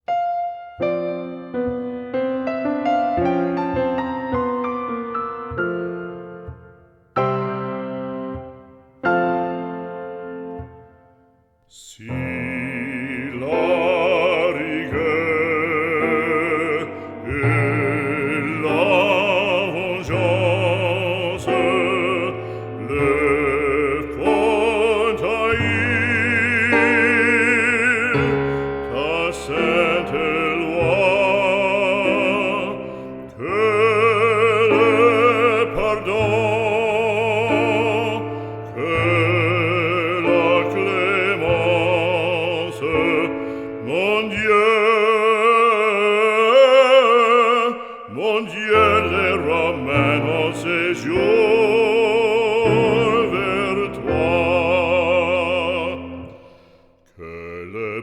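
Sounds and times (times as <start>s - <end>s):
instrumental accompaniment: 0.0s - 46.5s
operatic voice singing: 11.7s - 58.0s.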